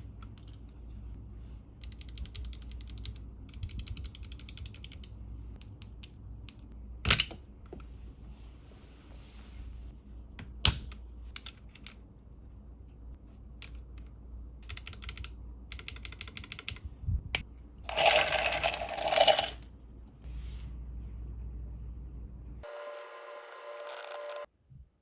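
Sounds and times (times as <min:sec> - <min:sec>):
typing on keyboard: 0:01.8 - 0:05.1, 0:14.6 - 0:16.8.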